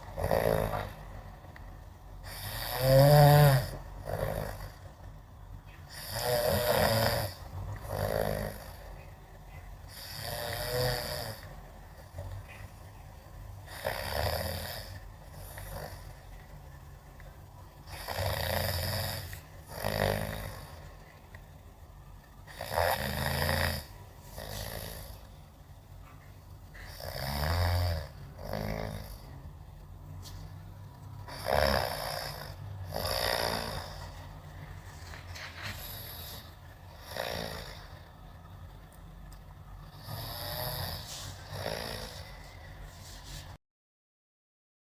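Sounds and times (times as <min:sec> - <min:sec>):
person snoring: 0:00.1 - 0:01.0, 0:02.2 - 0:04.8, 0:05.9 - 0:09.0, 0:09.9 - 0:12.3, 0:13.6 - 0:16.2, 0:17.9 - 0:21.0, 0:22.5 - 0:25.3, 0:26.8 - 0:29.4, 0:31.3 - 0:34.3, 0:35.1 - 0:38.2, 0:39.9 - 0:43.4.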